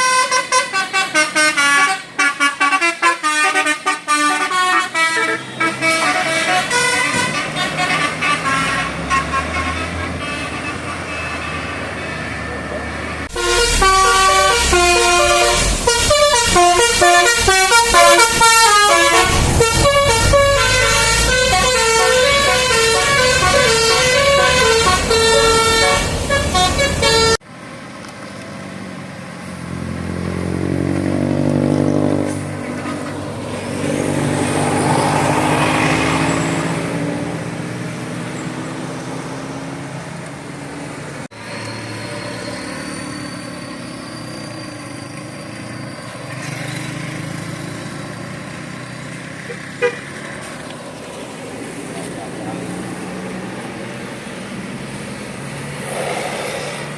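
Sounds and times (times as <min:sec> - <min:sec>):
bus air horn melody: 0:00.0 - 0:11.9, 0:13.3 - 0:27.4, 0:49.8 - 0:50.1
vehicle engine passing: 0:11.6 - 0:27.4, 0:28.5 - 0:43.4, 0:46.3 - 0:56.9.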